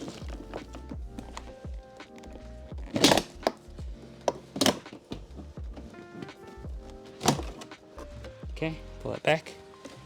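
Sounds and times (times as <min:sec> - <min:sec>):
background music with held notes: 0:00.0 - 0:10.0
low beat: 0:00.2 - 0:04.2, 0:05.2 - 0:09.0.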